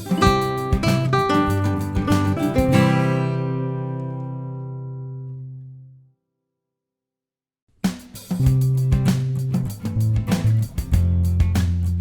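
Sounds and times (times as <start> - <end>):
acoustic guitar strumming: 0.0 - 5.8.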